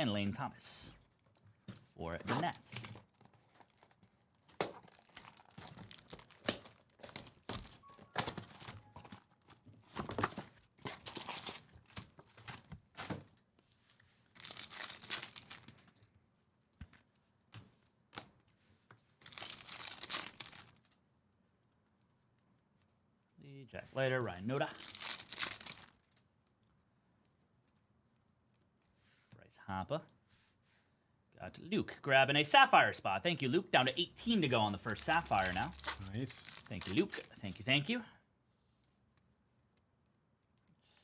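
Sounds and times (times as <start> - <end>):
wrappers tearing and crinkling: 2.4 - 9.4, 11.0 - 12.6, 14.3 - 15.9, 19.2 - 21.0, 24.2 - 26.2, 34.2 - 37.4.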